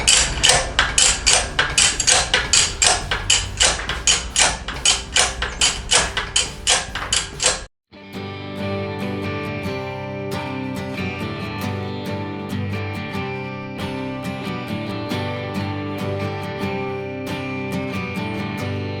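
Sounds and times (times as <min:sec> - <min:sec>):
rapid hammer blows: 0:00.0 - 0:07.7
guitar music: 0:00.0 - 0:19.0.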